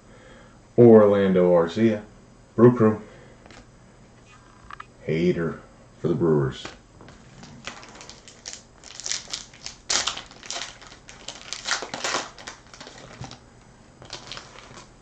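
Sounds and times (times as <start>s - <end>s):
card packs crinkling and rustling: 6.6s - 13.4s, 14.0s - 15.0s.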